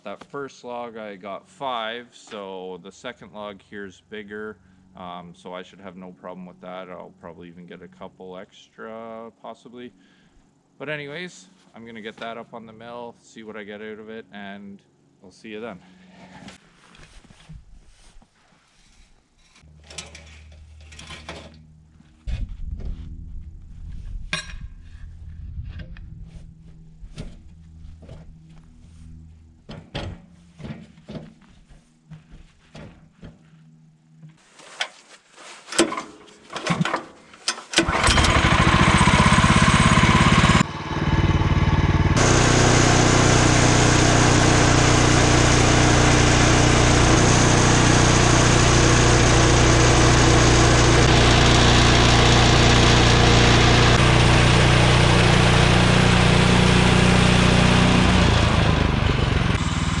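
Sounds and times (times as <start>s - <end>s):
sawmill petrol engine running: 37.8s - 60.0s
band blade cutting log: 42.2s - 54.1s.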